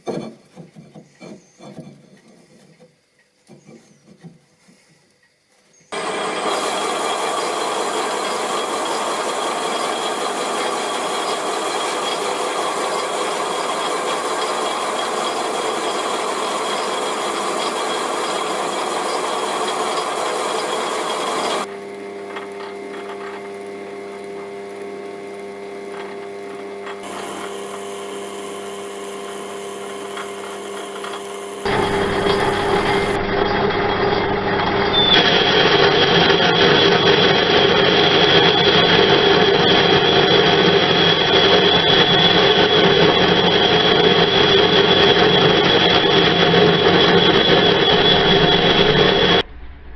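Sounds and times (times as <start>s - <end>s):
motor hum: 5.9s - 49.9s
machine tool cutting metal: 6.0s - 21.7s, 26.9s - 49.4s.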